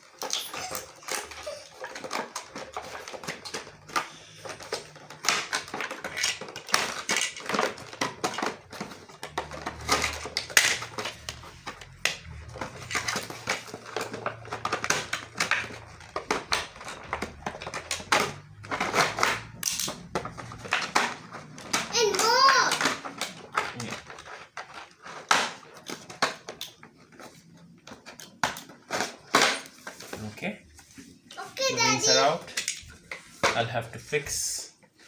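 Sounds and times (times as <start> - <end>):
plastic parts tapping and clicking: 0.0 - 35.0.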